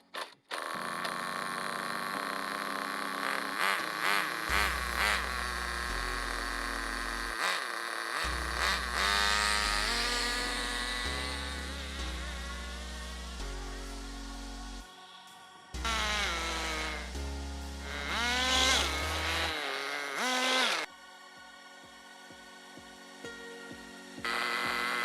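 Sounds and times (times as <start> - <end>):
rising buzzing whine: 0.8 - 14.9, 15.8 - 20.9
electronic music with bass line: 2.2 - 7.6, 8.2 - 14.9, 15.7 - 20.6, 23.2 - 25.0.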